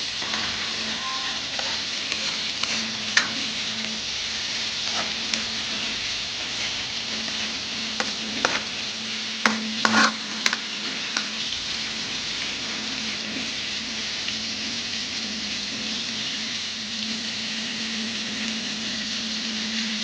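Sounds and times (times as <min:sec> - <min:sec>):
food sizzling in a pan: 0:00.0 - 0:20.0
utensil scraping a pan: 0:00.1 - 0:14.0.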